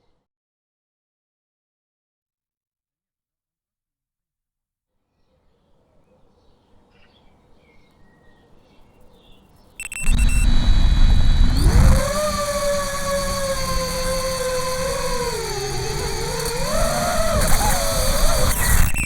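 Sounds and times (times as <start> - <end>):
drone motors buzzing whine: 9.8 - 19.0.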